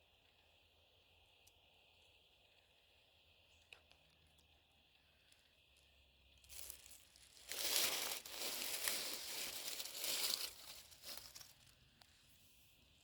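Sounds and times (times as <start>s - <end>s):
crinkling rustling noise: 6.4s - 11.8s.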